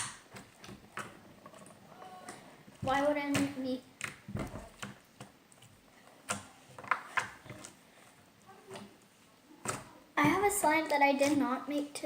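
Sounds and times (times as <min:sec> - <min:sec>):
slime squished with fingers: 0:03.3 - 0:07.8.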